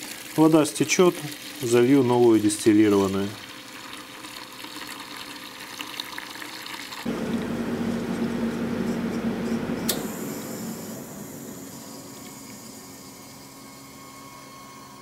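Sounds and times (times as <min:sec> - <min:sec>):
pump humming: 0:07.0 - 0:15.0
switch click: 0:09.8 - 0:10.1.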